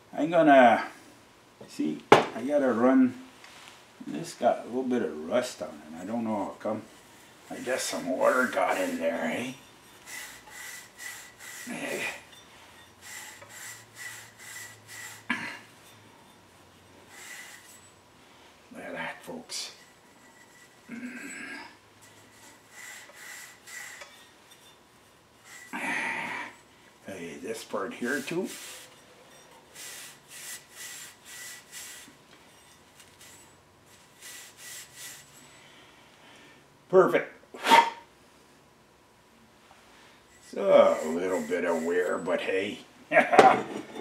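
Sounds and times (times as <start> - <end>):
sharp knock: 2.1 - 2.4
abrasive rubbing on metal: 4.3 - 35.6, 40.1 - 42.8
scrubbing rust off metal: 4.5 - 35.6, 40.2 - 42.7.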